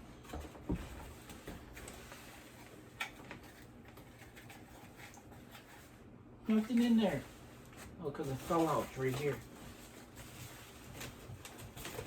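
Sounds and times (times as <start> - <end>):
packaging handling noise: 6.5 - 12.0.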